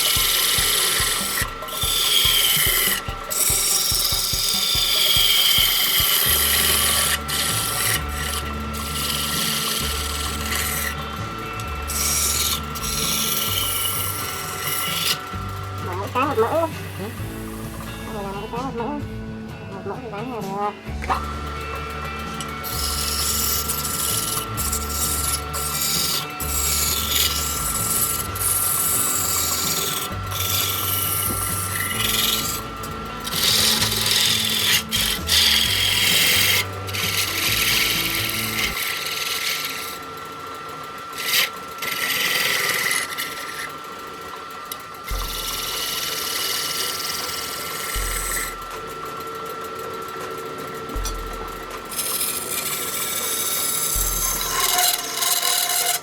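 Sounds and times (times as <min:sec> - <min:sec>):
steady high tone: 0:00.0 - 0:38.8
turning tool scraping wood: 0:00.0 - 0:56.0
wood lathe running: 0:00.0 - 0:56.0.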